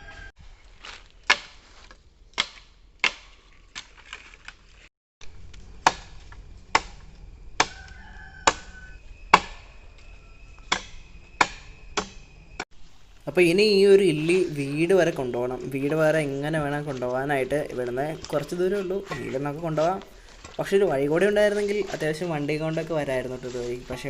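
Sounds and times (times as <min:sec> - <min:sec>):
rooster crowing: 0:00.0 - 0:00.3, 0:07.0 - 0:12.6
blade chopping bamboo: 0:01.3 - 0:01.6, 0:02.4 - 0:04.7, 0:05.6 - 0:08.7, 0:09.3 - 0:09.6, 0:10.7 - 0:12.2.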